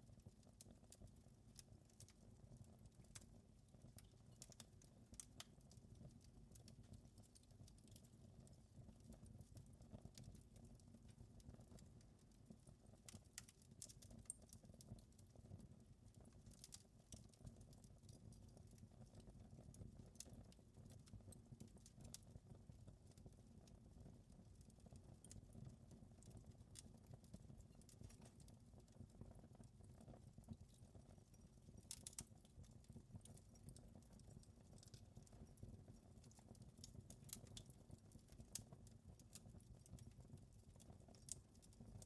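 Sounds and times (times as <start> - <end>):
low rumble of burning: 0.0 - 42.0
wood fire crackling: 0.0 - 42.0
fire pops and snaps: 13.0 - 15.2, 24.6 - 29.0, 29.9 - 35.6, 36.2 - 40.2, 40.8 - 42.0.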